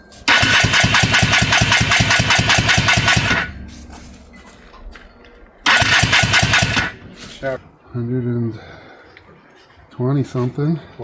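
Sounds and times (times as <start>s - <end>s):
electric starter cranking engine: 0.0s - 5.0s, 5.6s - 7.6s.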